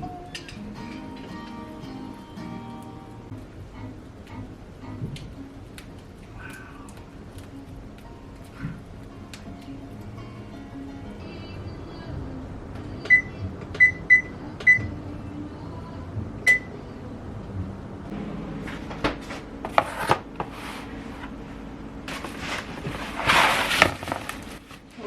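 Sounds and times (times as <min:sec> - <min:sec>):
short electronic beeps: 0:13.1 - 0:14.9, 0:16.5 - 0:16.7
rustling: 0:18.6 - 0:25.0.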